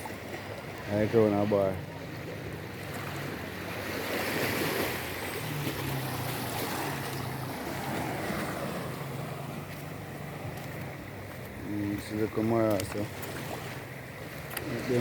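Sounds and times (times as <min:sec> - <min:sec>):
sea waves washing on shore: 0:00.0 - 0:15.0.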